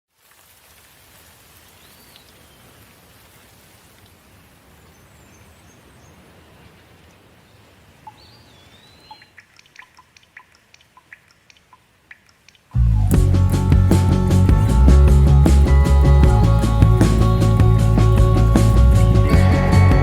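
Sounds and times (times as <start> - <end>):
steady rain falling: 0.1 - 8.8
bird whistling calls: 8.1 - 9.4
sharp drip taps: 9.1 - 12.8.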